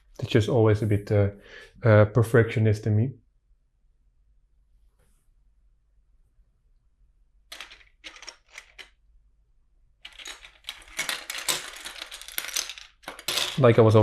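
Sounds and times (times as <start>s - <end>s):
plastic bricks clicking and rattling: 7.5s - 9.0s, 10.0s - 14.0s.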